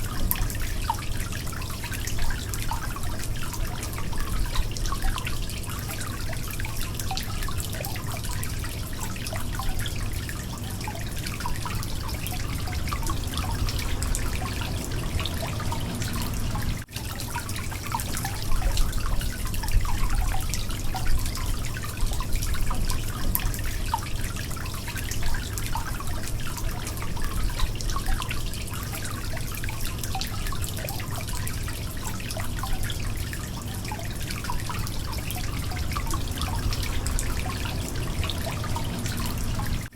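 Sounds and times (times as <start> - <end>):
water dripping: 0.0 - 39.9
water trickling: 0.0 - 39.9
low hum: 11.9 - 16.9, 35.2 - 39.9.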